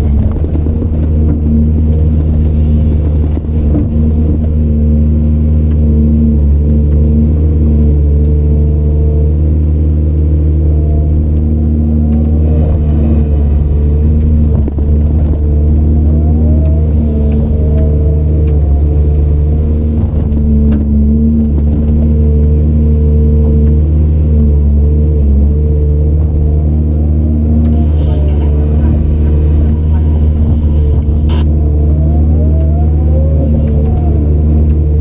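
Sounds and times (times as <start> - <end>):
heavy diesel engine running: 0.0 - 35.0
short rising and falling whines: 15.6 - 35.0.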